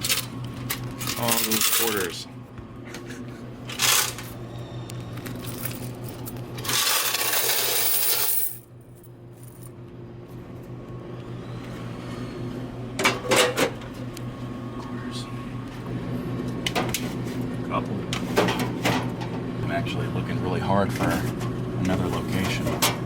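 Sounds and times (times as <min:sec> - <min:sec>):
coins clinking and sliding: 0:00.0 - 0:02.2, 0:03.7 - 0:04.3, 0:05.2 - 0:08.7, 0:09.4 - 0:09.7
steady low hum: 0:00.0 - 0:23.0.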